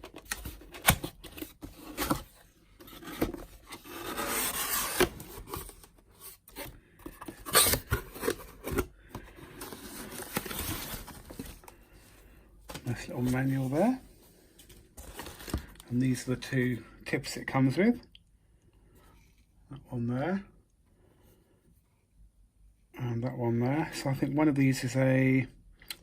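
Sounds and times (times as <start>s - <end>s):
cardboard box scraping and rubbing: 0.7s - 8.9s.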